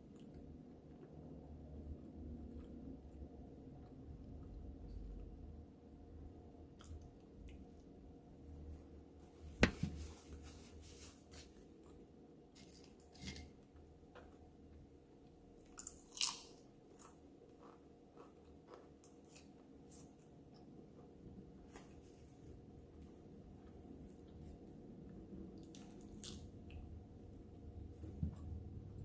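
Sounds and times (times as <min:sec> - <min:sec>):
food crunching: 0:15.6 - 0:20.4
person chewing and biting: 0:15.7 - 0:20.1.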